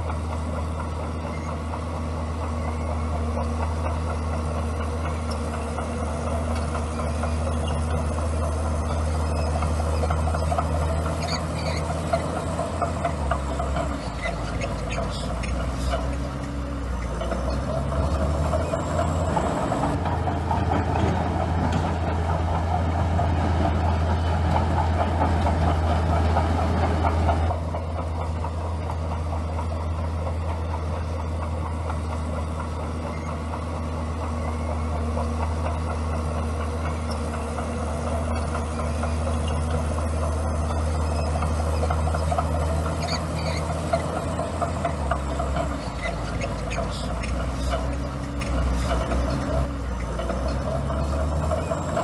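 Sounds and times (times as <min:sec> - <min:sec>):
bulldozer diesel engine: 0:00.0 - 0:52.0.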